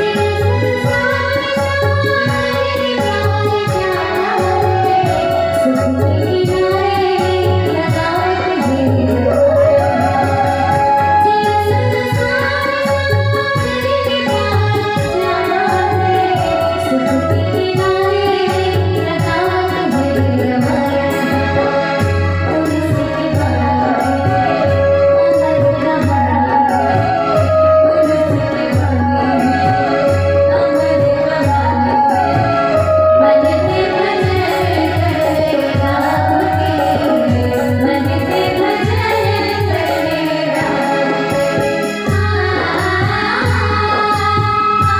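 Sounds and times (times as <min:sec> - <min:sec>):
person singing: 0:00.0 - 0:13.0
music with singing: 0:00.0 - 0:44.9.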